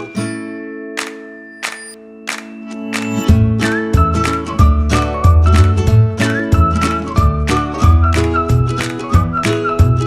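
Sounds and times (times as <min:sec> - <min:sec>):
plucked guitar: 0:00.0 - 0:10.0
whistled melody: 0:00.0 - 0:10.0
bass: 0:03.1 - 0:10.0
drums: 0:03.2 - 0:10.0.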